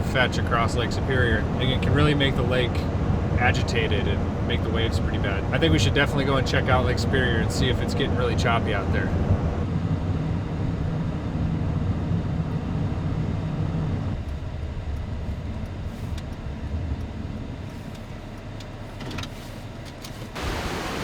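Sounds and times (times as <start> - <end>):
road and engine rumble: 0.0 - 21.0
wind: 0.0 - 21.0
lake surf: 20.4 - 21.0.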